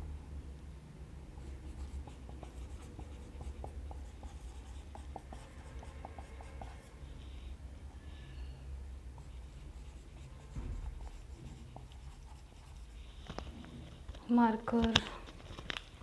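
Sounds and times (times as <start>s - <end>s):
steady low hum: 0.0s - 14.3s
marker pen scratching: 1.4s - 7.5s, 9.1s - 13.7s.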